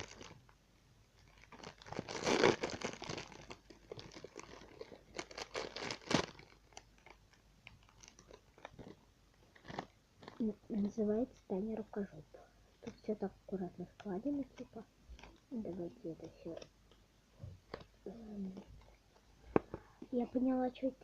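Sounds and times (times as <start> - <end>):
plastic bag crinkling: 0.0 - 0.6, 1.2 - 11.2, 13.9 - 17.0.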